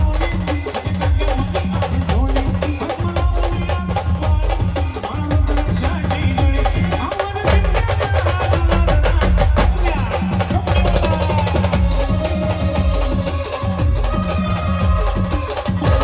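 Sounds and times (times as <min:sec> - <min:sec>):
fast drum and percussion beat: 0:00.0 - 0:16.0
brass band music: 0:10.8 - 0:16.0.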